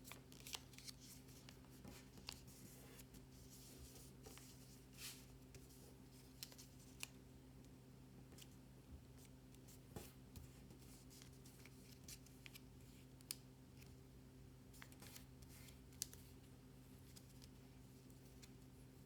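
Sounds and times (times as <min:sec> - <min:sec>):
paper creasing and rustling: 0:00.0 - 0:07.1.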